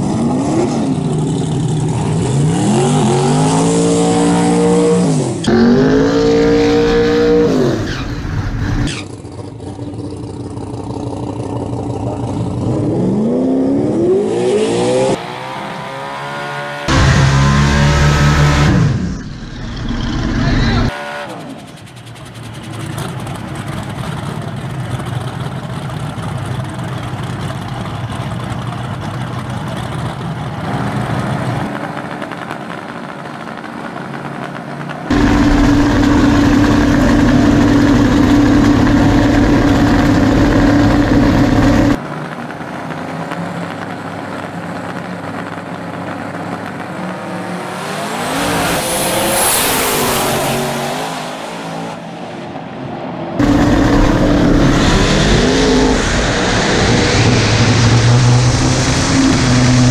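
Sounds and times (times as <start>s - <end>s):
car accelerating hard: 0.0s - 9.0s, 12.1s - 21.7s, 35.1s - 42.7s, 43.8s - 52.2s, 53.4s - 59.9s
race car engines running: 0.0s - 59.9s.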